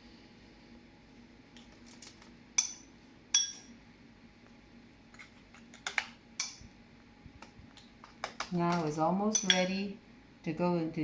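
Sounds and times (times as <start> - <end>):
utensils clinking on dishware: 2.6 - 3.7, 8.3 - 9.8.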